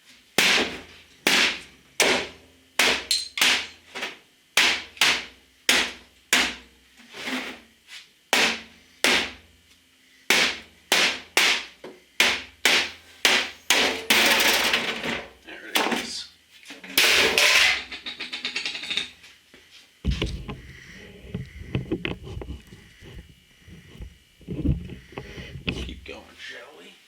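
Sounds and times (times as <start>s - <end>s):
hammer striking a computer: 0.4s - 3.8s, 4.6s - 6.6s, 8.3s - 9.4s, 10.3s - 14.4s.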